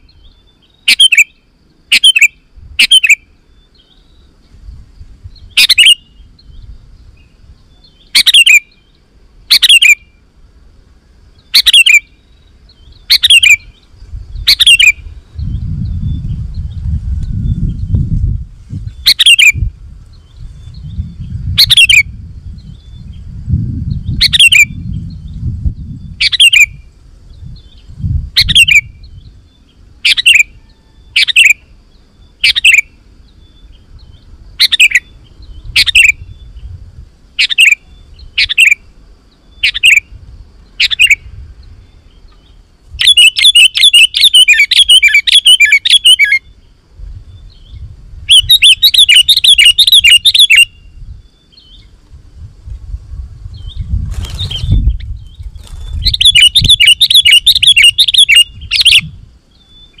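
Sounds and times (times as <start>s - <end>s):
bird calling sharply: 0.8s - 3.3s, 5.5s - 6.2s, 8.0s - 8.8s, 9.5s - 10.1s, 11.5s - 12.2s, 13.1s - 13.7s, 43.0s - 46.4s, 56.1s - 59.1s
bird chattering: 0.9s - 1.3s, 1.9s - 3.2s, 5.5s - 6.1s, 8.0s - 8.6s, 9.5s - 10.0s, 11.5s - 12.1s, 13.0s - 13.6s, 14.5s - 15.0s, 19.0s - 19.6s, 21.6s - 22.0s, 24.2s - 24.7s, 30.1s - 30.5s, 34.6s - 35.1s, 37.4s - 37.8s, 39.6s - 40.0s, 40.8s - 41.2s, 43.0s - 46.4s, 48.3s - 50.7s, 56.0s - 59.1s.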